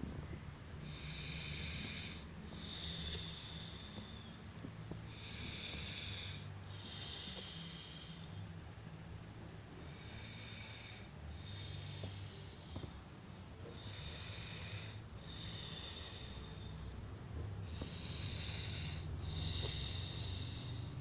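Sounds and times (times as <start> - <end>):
steady low drone: 0.0 - 21.0
person snoring with whistling hisses: 0.8 - 4.4, 5.1 - 8.4, 9.8 - 12.9, 13.7 - 16.9, 17.6 - 21.0.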